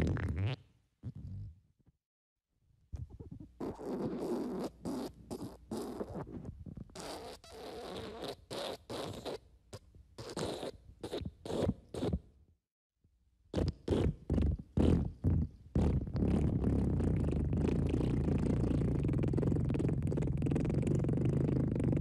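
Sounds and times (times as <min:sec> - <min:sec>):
raspy farts: 0:00.0 - 0:01.5, 0:03.0 - 0:09.4, 0:13.6 - 0:22.0.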